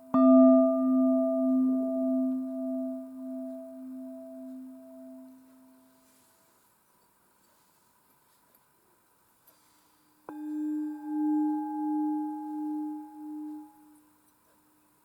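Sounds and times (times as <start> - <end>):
singing bowl ringing: 0.0 - 6.6, 10.3 - 14.2.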